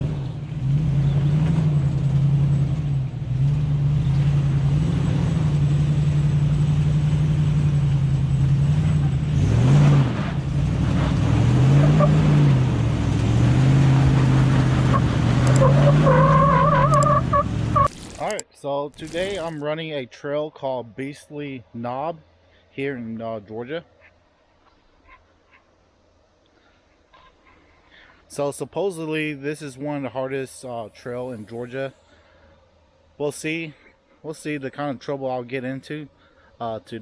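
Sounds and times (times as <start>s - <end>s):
engine revving: 0.0s - 18.4s
high wavering squeal: 14.5s - 17.9s.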